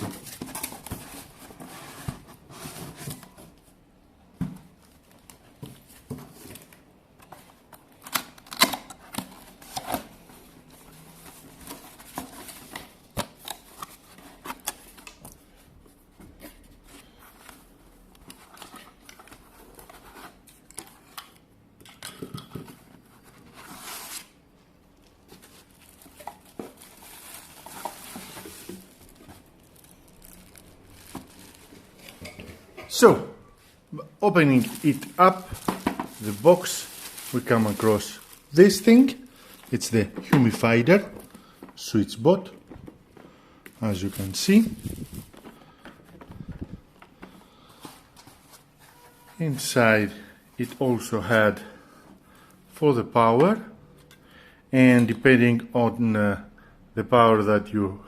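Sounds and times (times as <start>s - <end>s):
packing rustling: 25.2s - 32.3s, 34.3s - 41.4s, 43.7s - 46.7s.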